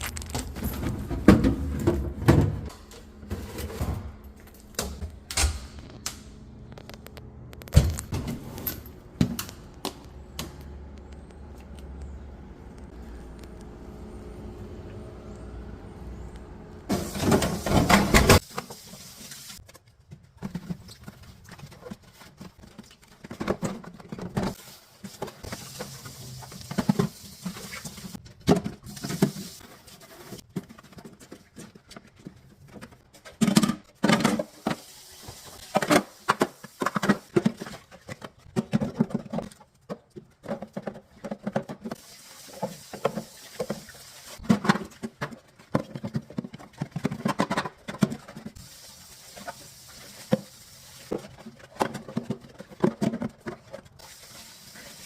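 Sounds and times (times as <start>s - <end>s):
plastic and glass parts handled: 0.0s - 1.4s.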